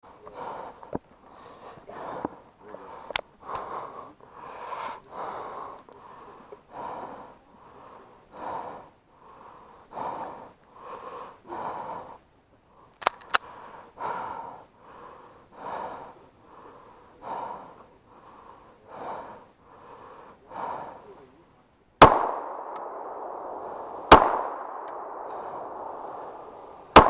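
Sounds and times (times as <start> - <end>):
heavy rhythmic breathing: 0.0 - 27.0
sharp cracks: 13.0 - 13.5, 22.0 - 27.0.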